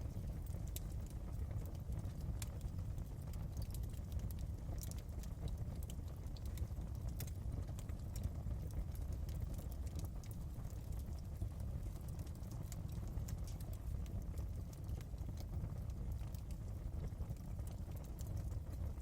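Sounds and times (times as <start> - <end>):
fire crackling and popping: 0.0 - 19.0
wood fire burning: 0.0 - 19.0.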